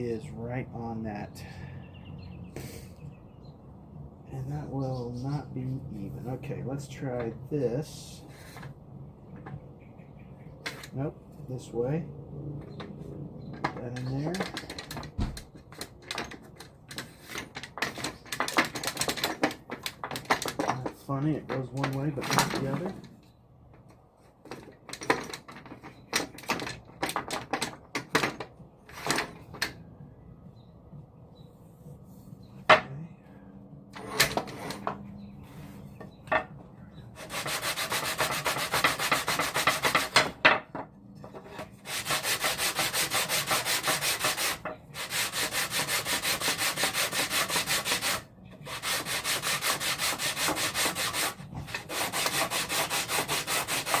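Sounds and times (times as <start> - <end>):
wooden parts clicking and knocking: 12.7 - 29.8
hand sanding wood: 37.2 - 40.2, 41.8 - 54.0.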